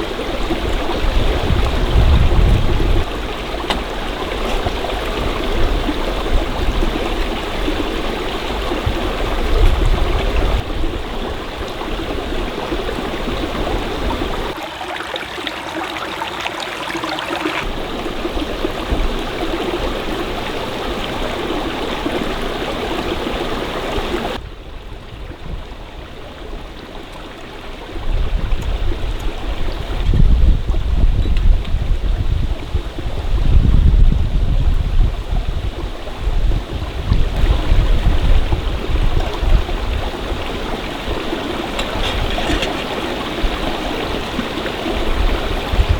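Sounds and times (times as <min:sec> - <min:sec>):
stream water flowing: 0:00.0 - 0:24.4, 0:25.0 - 0:30.2, 0:34.6 - 0:45.9.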